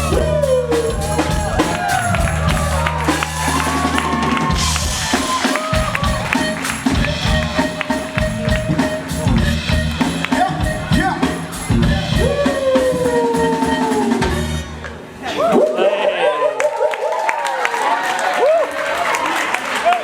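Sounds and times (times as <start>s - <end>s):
loud music with heavy beat: 0.0s - 14.8s
vocals: 0.0s - 16.3s.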